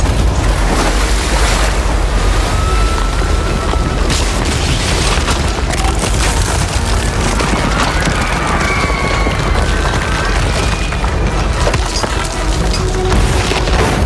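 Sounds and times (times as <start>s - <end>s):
deep earthquake rumble: 0.0s - 14.0s
concrete crashing and cracking: 3.7s - 14.0s.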